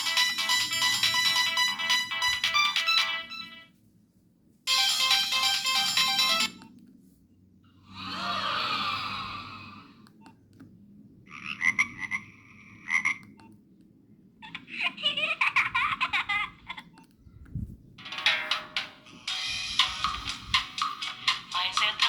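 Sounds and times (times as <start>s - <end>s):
mobile phone tones: 0.0s - 3.7s, 4.7s - 6.7s.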